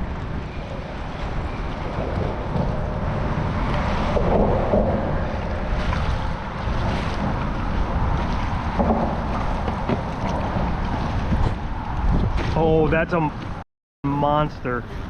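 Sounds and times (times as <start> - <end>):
wind buffeting microphone: 0.0 - 15.0
water sloshing around kayak: 0.5 - 12.6
short water splashes: 5.2 - 11.5.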